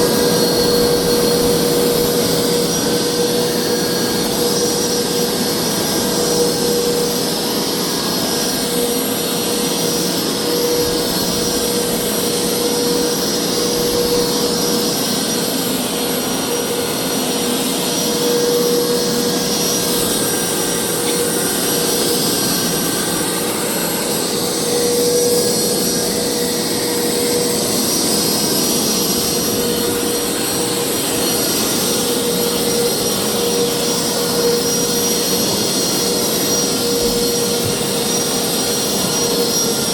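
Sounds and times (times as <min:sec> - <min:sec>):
carpet cleaner motor whine: 0:00.0 - 0:39.9.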